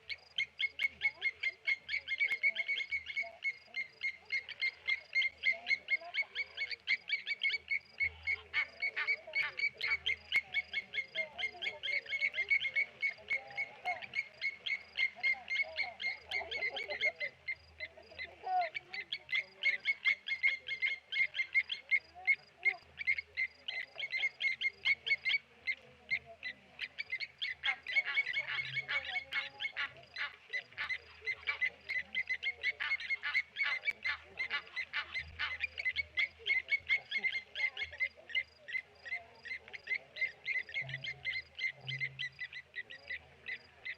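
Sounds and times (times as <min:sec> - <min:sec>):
lapwings metallic alarm calls: 0:26.8 - 0:43.9.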